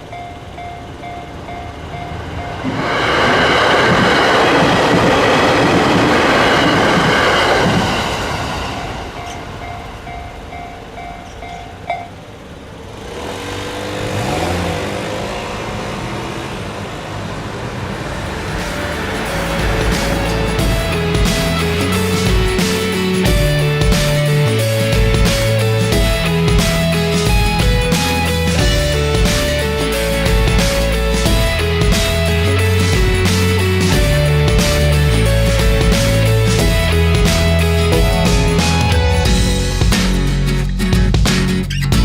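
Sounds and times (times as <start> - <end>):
electronic crossing bell ringing: 0.0 - 3.5, 5.2 - 12.3, 18.0 - 32.5
train passing loudly: 0.0 - 40.4.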